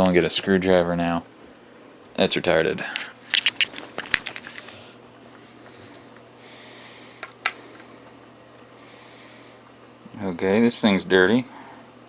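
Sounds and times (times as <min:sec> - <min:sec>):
soft rustle: 0:03.4 - 0:06.3.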